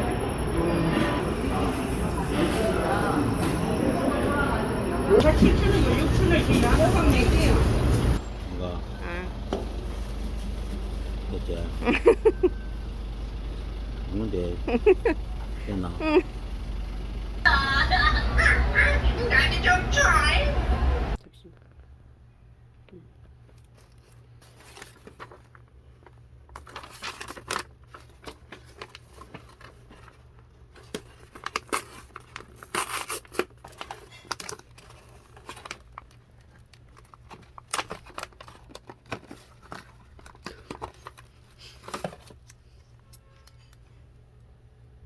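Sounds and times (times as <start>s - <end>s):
steady low hum: 0.0s - 23.6s
material crinkling and rustling: 23.2s - 42.8s.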